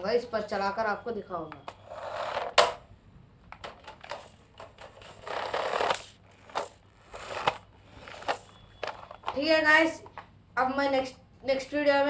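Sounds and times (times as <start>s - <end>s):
rustling and handling noises: 3.5s - 10.3s.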